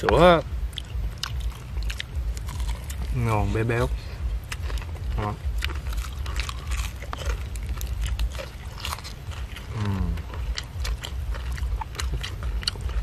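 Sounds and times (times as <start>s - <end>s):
crunching and chewing fried chicken: 0.0s - 13.0s.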